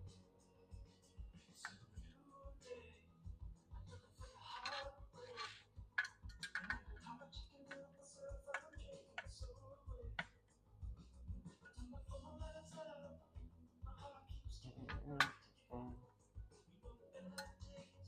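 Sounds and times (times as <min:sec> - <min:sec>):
faint background music: 0:00.0 - 0:18.0
clicks and taps of hand tools: 0:06.0 - 0:07.0.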